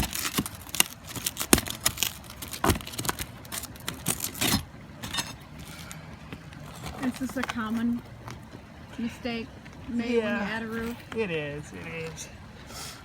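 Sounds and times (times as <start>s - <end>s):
shingles being torn off: 0.0s - 7.8s.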